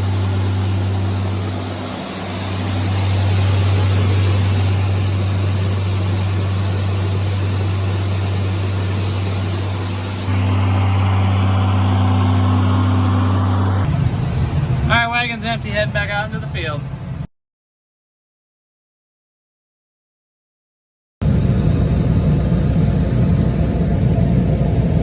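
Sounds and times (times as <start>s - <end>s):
grain-handling machinery hiss: 0.0s - 10.9s
tractor engine hum: 0.0s - 17.2s.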